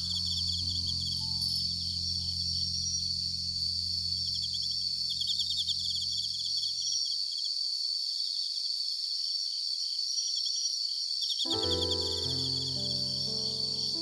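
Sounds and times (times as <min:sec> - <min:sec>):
low steady drone: 0:00.0 - 0:05.2
crickets trilling and chirping: 0:00.0 - 0:14.0.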